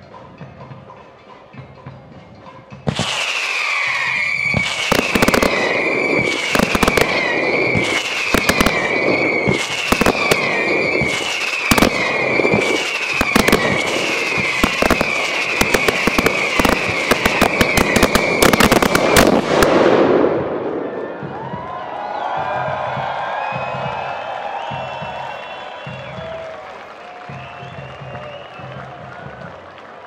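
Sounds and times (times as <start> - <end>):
fireworks bangs and crackling: 2.8 - 30.0
high dipping whistle: 3.0 - 19.2, 23.2 - 26.6, 27.2 - 29.0.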